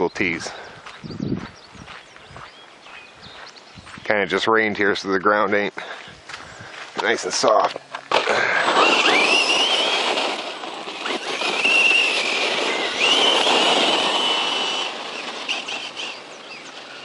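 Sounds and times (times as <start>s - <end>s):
tyres churning ground: 0.0s - 17.0s
electric motor whining: 8.1s - 17.0s.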